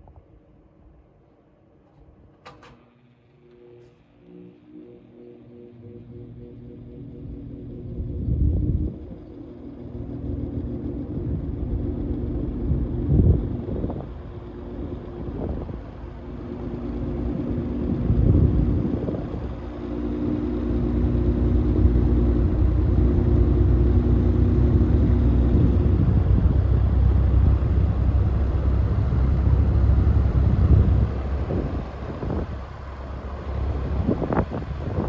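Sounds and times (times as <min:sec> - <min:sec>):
fan motor hum: 0:00.0 - 0:35.0
air buffeting microphone: 0:10.6 - 0:35.0.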